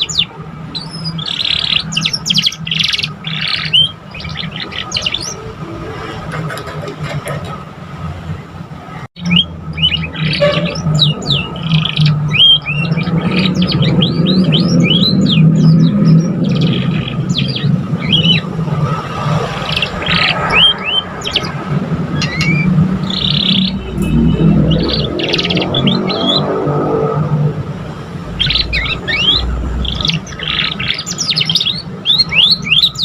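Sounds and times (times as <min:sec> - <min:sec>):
canary singing: 0:00.0 - 0:05.8, 0:09.2 - 0:33.0
steady low hum: 0:14.7 - 0:31.0.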